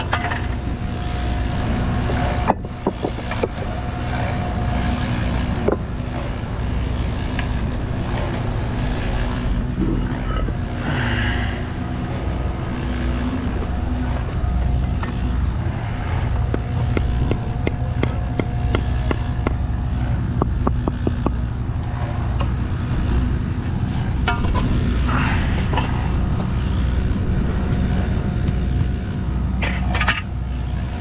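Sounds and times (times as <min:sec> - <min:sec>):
engine rumble: 0:00.0 - 0:31.0.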